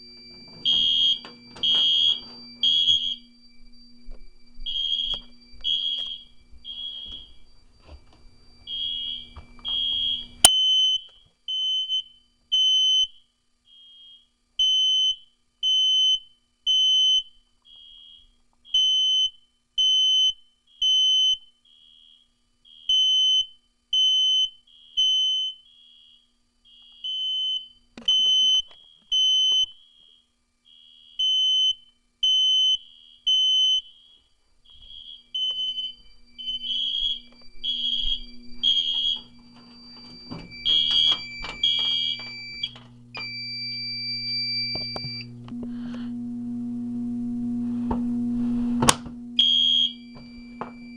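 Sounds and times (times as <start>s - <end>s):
low hum: 0.0s - 10.5s, 34.4s - 50.9s
different alarm beeping: 0.0s - 46.2s, 49.0s - 50.9s
faint second alarm beeping: 0.0s - 48.4s, 49.1s - 50.9s
smoke alarm beeping: 0.0s - 50.9s.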